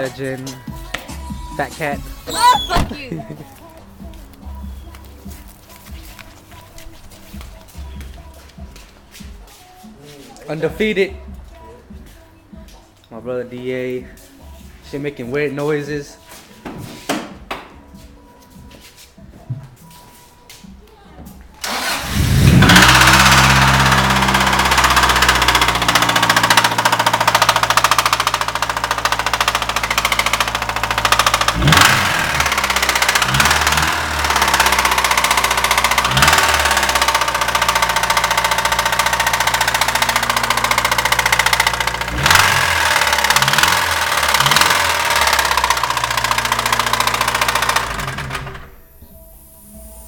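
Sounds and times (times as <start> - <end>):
car engine idling and revving: 21.6 - 50.0
weird engine noise: 21.6 - 50.0.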